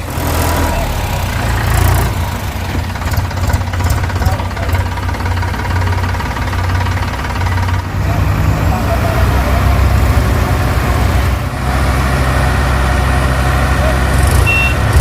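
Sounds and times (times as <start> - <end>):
heavy diesel engine rumbling: 0.0 - 15.0.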